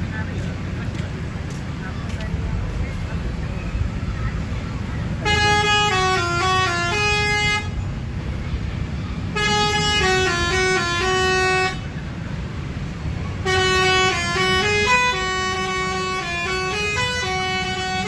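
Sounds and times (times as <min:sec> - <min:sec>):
low engine rumble: 0:00.0 - 0:18.0
multi-tone musical bus horn: 0:03.7 - 0:18.0.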